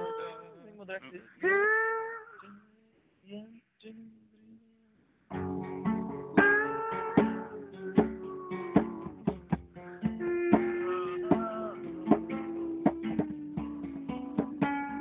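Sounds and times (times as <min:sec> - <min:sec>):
acoustic guitar plucking: 0:05.3 - 0:15.0
held melody line: 0:05.3 - 0:15.0.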